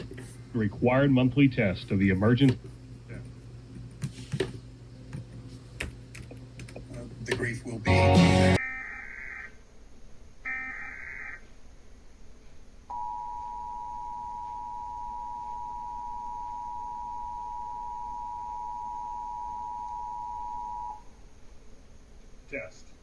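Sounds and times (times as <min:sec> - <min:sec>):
data header tones: 0:12.9 - 0:21.1
two-tone attention signal: 0:12.9 - 0:21.1.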